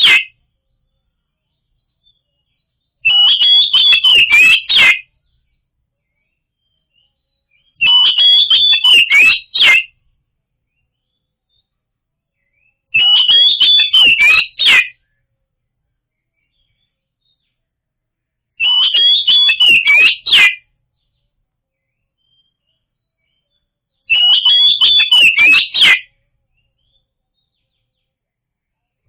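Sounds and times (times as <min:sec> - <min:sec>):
bird whistled song with clicks: 0:00.0 - 0:00.4, 0:02.0 - 0:10.0, 0:12.4 - 0:15.3, 0:18.6 - 0:28.2.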